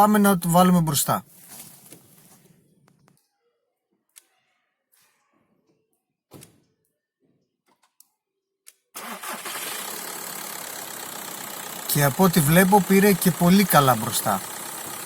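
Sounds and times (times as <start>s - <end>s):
diesel engine starting and running: 9.0s - 15.0s.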